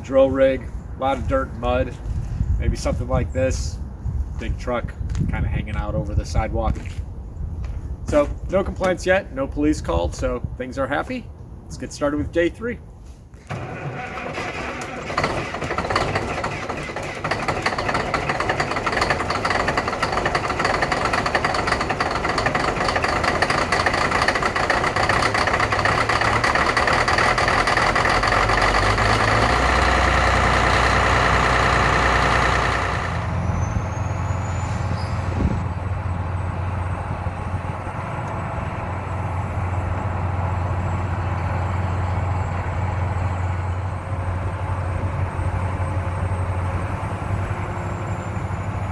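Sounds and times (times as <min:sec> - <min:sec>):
low engine rumble: 0:00.0 - 0:48.9
drilling rig mechanical noise: 0:13.3 - 0:48.9.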